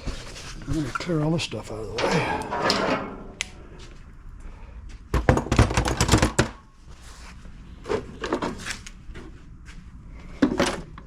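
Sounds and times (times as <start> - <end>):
tools and parts clattering: 1.9 - 3.9, 5.2 - 6.6, 7.8 - 9.3.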